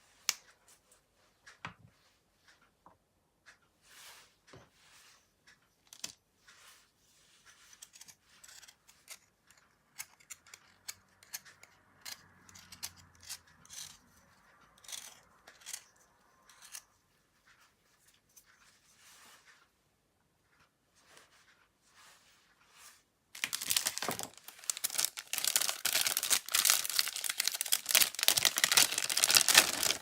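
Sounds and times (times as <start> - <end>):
slime being kneaded by hand: 23.4 - 30.0.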